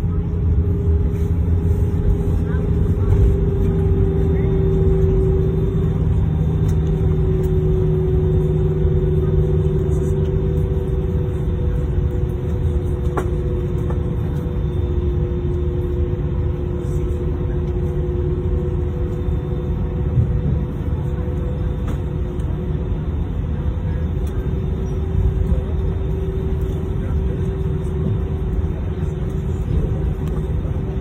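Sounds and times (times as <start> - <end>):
deep hum: 0.0 - 23.6
low engine rumble: 0.0 - 31.0.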